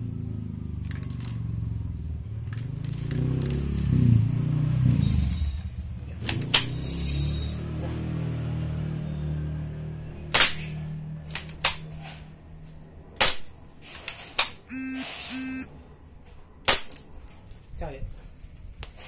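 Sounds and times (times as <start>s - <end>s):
short beeps: 14.7s - 15.7s.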